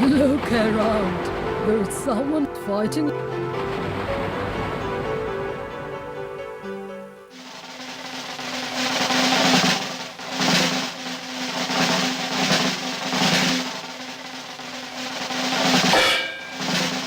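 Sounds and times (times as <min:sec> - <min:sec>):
snare drum roll: 0:07.3 - 0:17.0.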